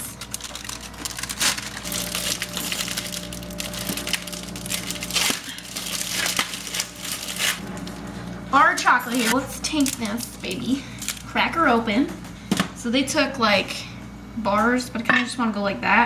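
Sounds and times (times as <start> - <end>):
crackers snapping: 0.1 - 7.9.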